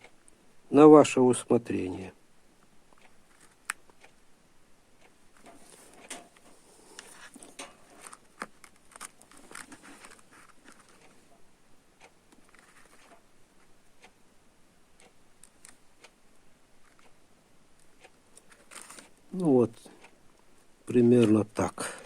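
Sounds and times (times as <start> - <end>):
soft rustling: 5.3 - 14.0, 18.0 - 22.0.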